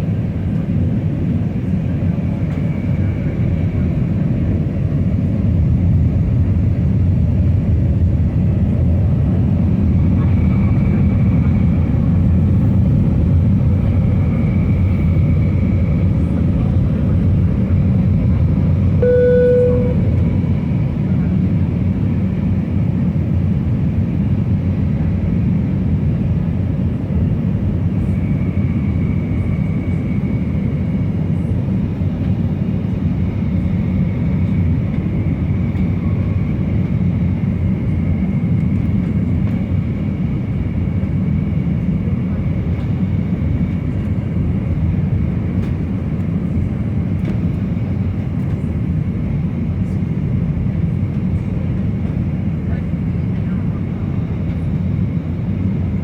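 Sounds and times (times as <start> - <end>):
aircraft cabin engine drone: 0.0 - 56.0
cabin chime tone: 19.0 - 20.2.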